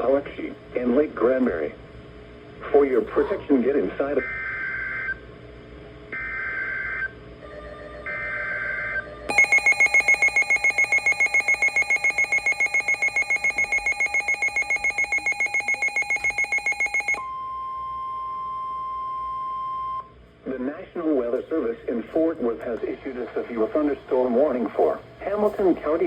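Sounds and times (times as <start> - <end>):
pulsing electronic alarm: 6.2 - 18.1
steady warning tone: 6.2 - 18.8
screeching digital data tones: 8.1 - 17.2.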